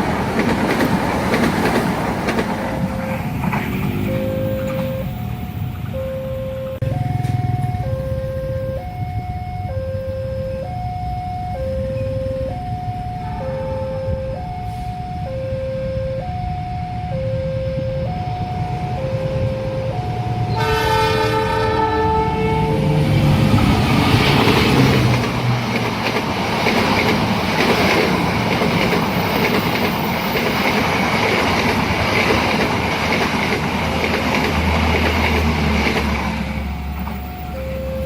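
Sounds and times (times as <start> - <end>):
train wheels clattering on rails: 0.0 - 5.1, 23.2 - 38.0
level crossing two-tone alarm: 4.0 - 21.1, 36.9 - 38.0
train horn chord: 13.2 - 15.0, 20.5 - 23.4.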